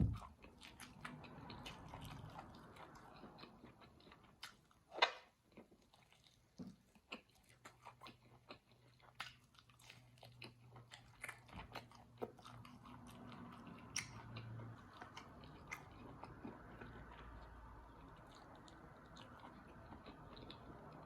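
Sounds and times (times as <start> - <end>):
low steady hum: 0.0 - 4.5, 10.2 - 21.0
chewing and biting food: 0.0 - 21.0.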